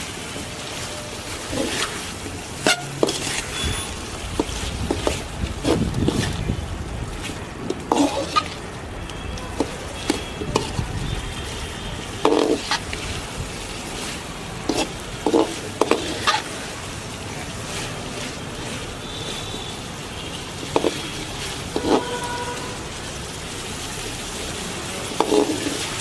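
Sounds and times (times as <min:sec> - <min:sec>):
food sizzling in a pan: 0:00.0 - 0:26.0
spoon scraping and knocking pan: 0:02.6 - 0:03.5, 0:07.7 - 0:08.6, 0:12.2 - 0:12.9, 0:14.7 - 0:16.5, 0:20.7 - 0:21.1, 0:21.8 - 0:22.2, 0:25.2 - 0:26.0.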